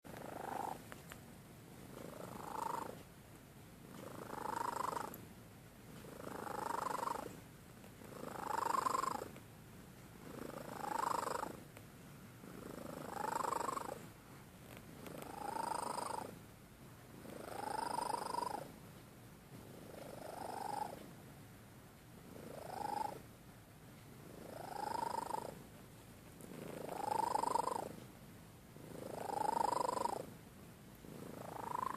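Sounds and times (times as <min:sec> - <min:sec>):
cat snoring: 0:00.1 - 0:00.9, 0:01.9 - 0:03.0, 0:03.9 - 0:05.2, 0:05.9 - 0:07.4, 0:08.0 - 0:09.4, 0:10.2 - 0:11.7, 0:12.4 - 0:14.1, 0:15.0 - 0:16.4, 0:17.2 - 0:18.7, 0:19.6 - 0:21.0, 0:22.2 - 0:23.2, 0:24.2 - 0:25.6, 0:26.4 - 0:28.0, 0:28.8 - 0:30.4, 0:31.0 - 0:31.9.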